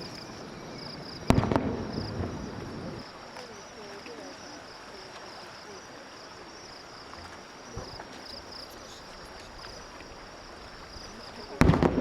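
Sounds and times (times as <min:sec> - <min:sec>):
insects chirping: 0:00.0 - 0:12.0.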